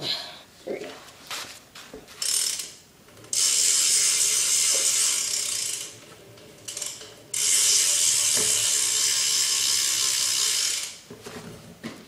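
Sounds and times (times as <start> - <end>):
bike hub ratcheting buzz: 2.2 - 11.1.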